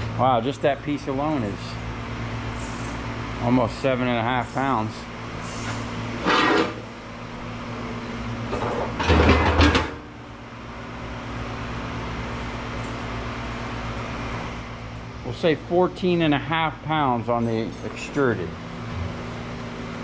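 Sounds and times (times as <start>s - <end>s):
air conditioner hum: 0.0s - 20.0s
metal scrap clattering: 6.2s - 6.8s, 8.5s - 10.1s.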